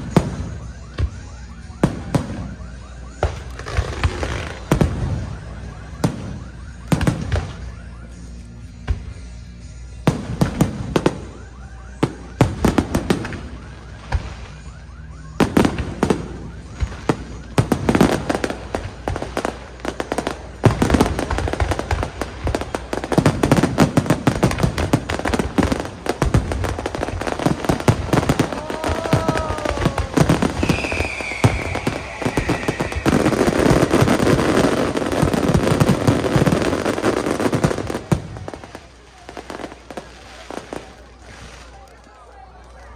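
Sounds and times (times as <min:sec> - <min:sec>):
firework bangs: 0:00.0 - 0:08.0, 0:10.1 - 0:41.8
fireworks crackling barrage: 0:00.0 - 0:42.9
firework whistles gliding down: 0:27.4 - 0:37.2.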